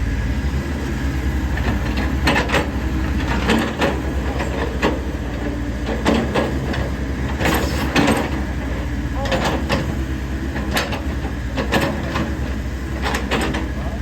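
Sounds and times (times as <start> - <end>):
excavator diesel engine running: 0.0 - 14.0
short knocks or hisses: 7.4 - 8.1.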